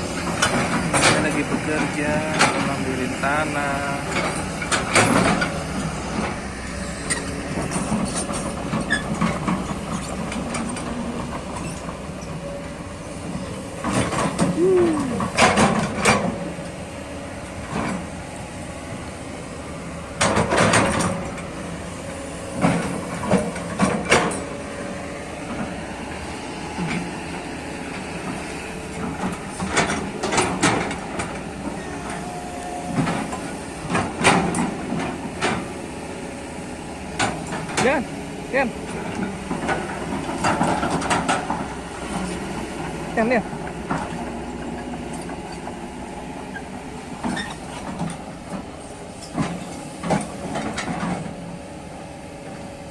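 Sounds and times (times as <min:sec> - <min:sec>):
bucket and arm clanking: 0:00.0 - 0:06.4
excavator engine running: 0:00.0 - 0:52.9.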